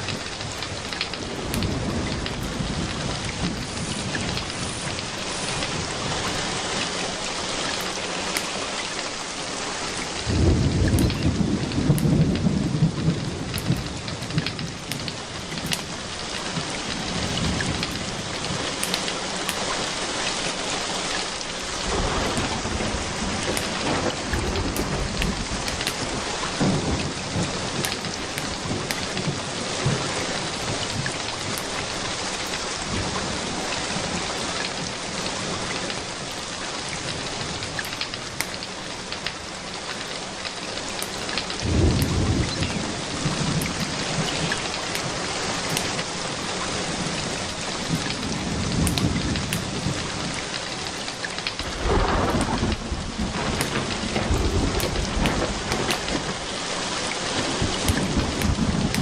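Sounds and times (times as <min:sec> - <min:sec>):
steady rain falling: 0:00.0 - 0:59.0
thunder rumbling: 0:00.0 - 0:59.0.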